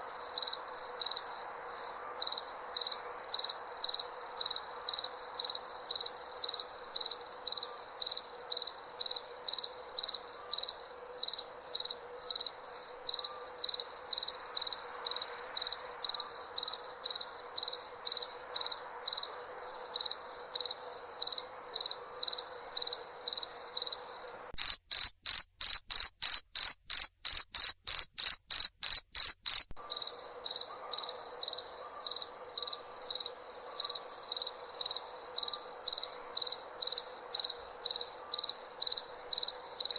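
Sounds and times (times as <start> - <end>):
faint background hiss: 0.0 - 24.6, 29.8 - 39.9
cricket chirping: 0.0 - 39.9.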